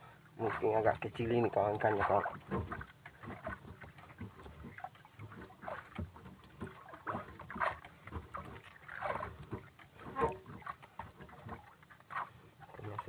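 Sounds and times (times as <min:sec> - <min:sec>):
water slapping boat: 0:00.0 - 0:13.0
knocks and rustles on board: 0:02.4 - 0:12.3.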